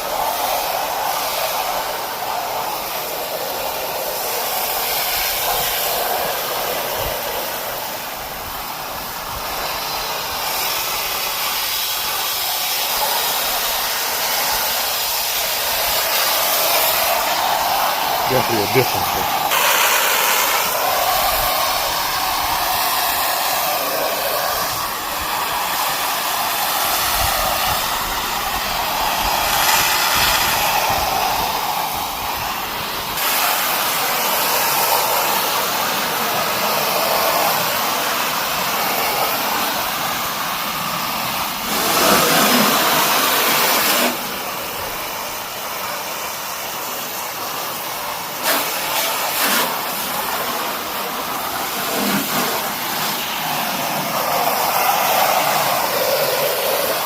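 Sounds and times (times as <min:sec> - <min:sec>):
pressure washer spray hissing: 0:00.0 - 0:57.0.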